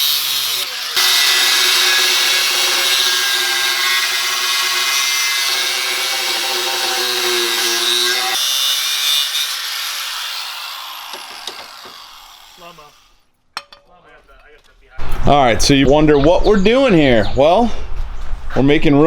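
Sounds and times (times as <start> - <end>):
power tool whining and grinding: 0.0 - 13.2.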